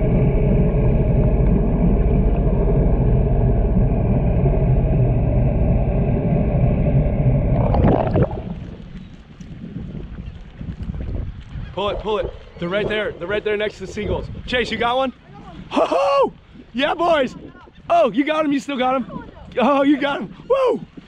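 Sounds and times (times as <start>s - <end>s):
rushing noise: 0.0s - 8.9s.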